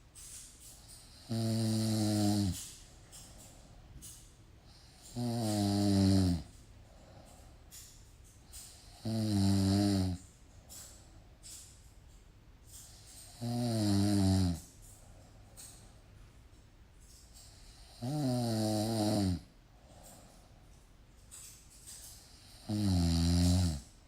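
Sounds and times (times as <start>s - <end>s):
person snoring: 1.1s - 2.6s, 4.7s - 6.5s, 8.9s - 10.2s, 13.3s - 14.7s, 17.7s - 19.5s, 22.3s - 23.9s.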